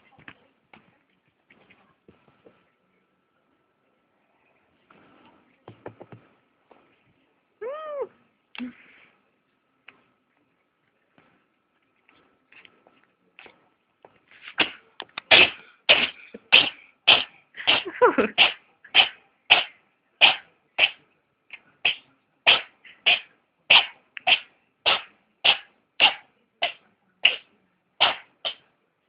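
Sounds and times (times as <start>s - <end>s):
wavering voiced sound: 7.6s - 8.2s
faint sniffs: 8.6s - 9.2s
cat sneezing: 14.4s - 21.0s, 21.8s - 28.6s.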